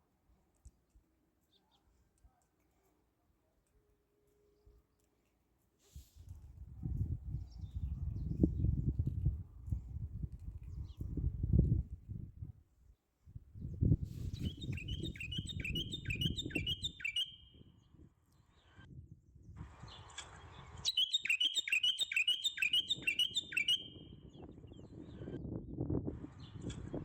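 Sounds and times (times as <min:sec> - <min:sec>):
songbird singing: 0:14.3 - 0:17.6, 0:20.9 - 0:24.8.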